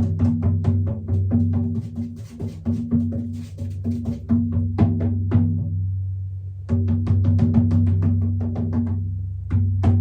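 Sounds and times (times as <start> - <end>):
rapid drum strikes: 0.0 - 5.6.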